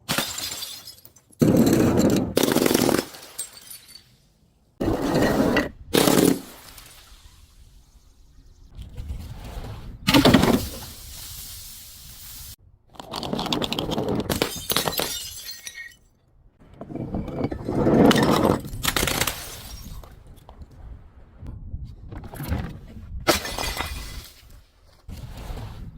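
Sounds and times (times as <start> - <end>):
glass bottles shattering: 0.0 - 4.3, 14.3 - 16.1, 18.0 - 20.1, 23.3 - 24.4.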